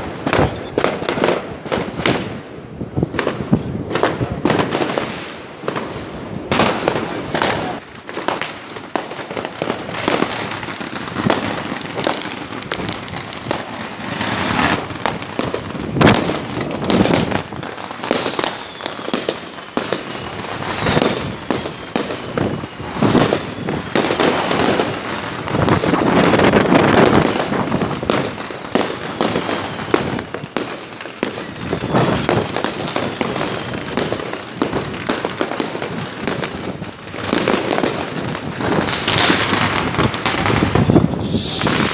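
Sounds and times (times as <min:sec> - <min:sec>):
fireworks bangs and crackles: 0:00.0 - 0:41.9
falling firework whistles: 0:04.8 - 0:36.4, 0:37.3 - 0:41.9.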